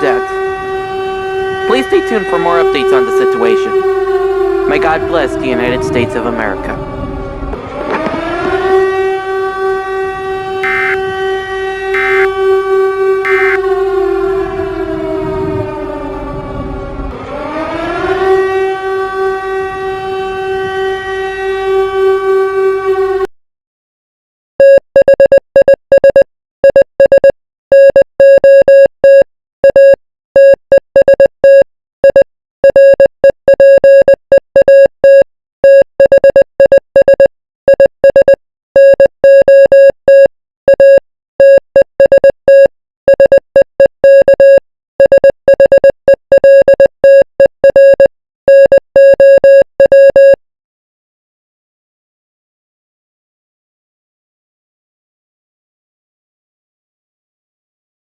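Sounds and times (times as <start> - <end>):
buzzy electronic beeps: 12.0 - 12.3, 13.3 - 13.6.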